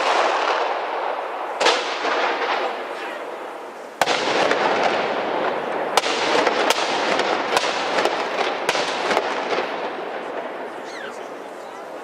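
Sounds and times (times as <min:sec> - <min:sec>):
rifle shots crackling: 0:00.0 - 0:03.4, 0:04.0 - 0:11.4.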